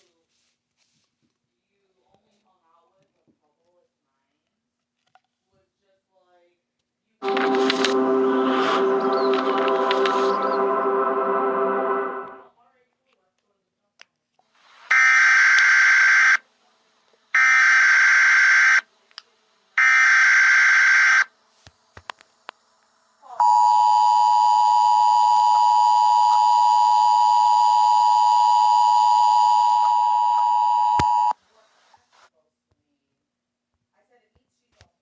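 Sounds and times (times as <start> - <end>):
two-tone attention signal beeps: 23.4 - 31.3.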